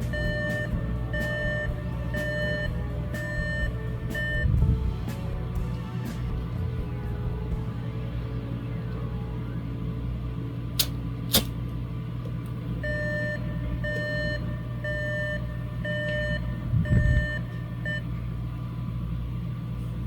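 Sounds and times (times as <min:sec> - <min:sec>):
electronic alarm beeping: 0:00.0 - 0:04.7, 0:12.8 - 0:18.1
steady low hum: 0:00.0 - 0:20.0
sharp clicks: 0:10.8 - 0:12.6.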